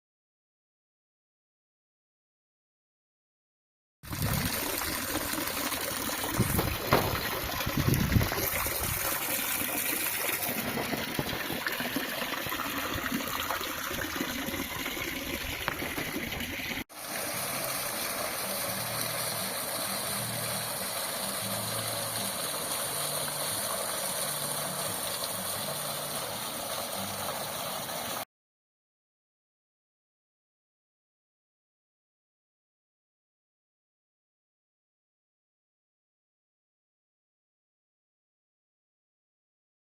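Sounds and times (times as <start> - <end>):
water splashing down waterfall: 4.1 - 28.2.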